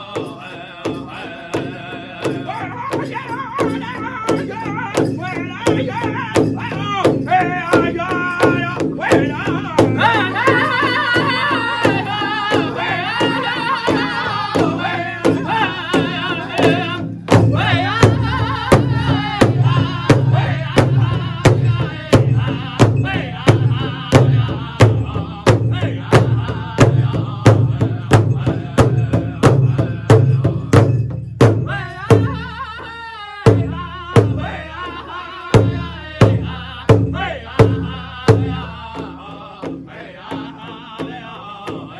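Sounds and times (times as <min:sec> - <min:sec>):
singers singing high: 0:00.0 - 0:30.9, 0:31.7 - 0:41.9
big drum steady beat: 0:00.0 - 0:41.9.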